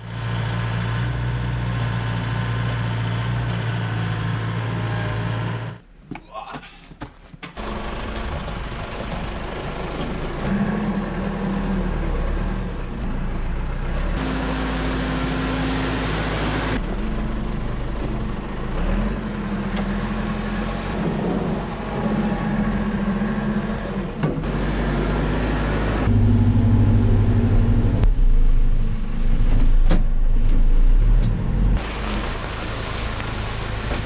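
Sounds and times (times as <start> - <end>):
excavator diesel engine working: 7.6 - 34.0.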